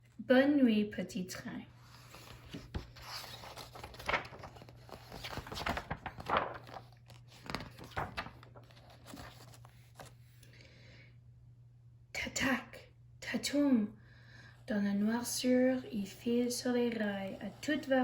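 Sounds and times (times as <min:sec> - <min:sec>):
paper pages rustling: 0:01.8 - 0:10.4.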